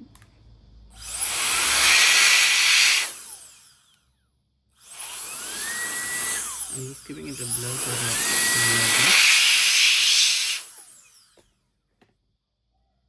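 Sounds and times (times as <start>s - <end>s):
air blower hissing whine: 0.9s - 3.9s, 4.8s - 11.3s.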